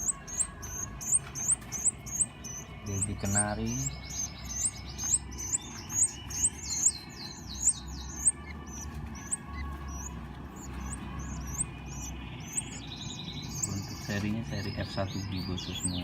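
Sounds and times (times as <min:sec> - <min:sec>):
canary chicks cheeping: 0:00.0 - 0:16.0.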